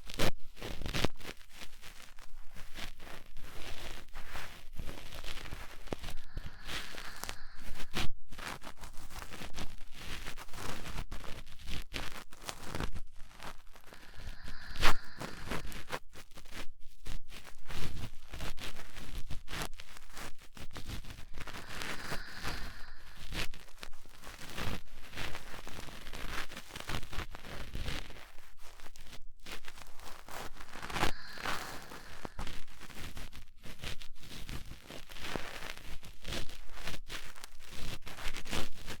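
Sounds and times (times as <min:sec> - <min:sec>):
cotton swab scratching microphone: 0:02.6 - 0:08.0, 0:11.3 - 0:16.5, 0:18.7 - 0:39.0.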